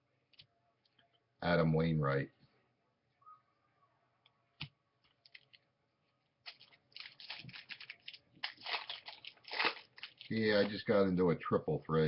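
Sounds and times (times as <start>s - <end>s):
foil wrapper crinkling and tearing: 6.4s - 10.8s.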